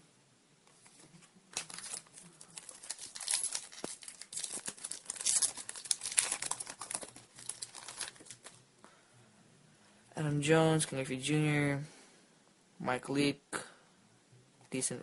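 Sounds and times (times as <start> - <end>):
wrapper crinkling and tearing: 1.5 - 8.6.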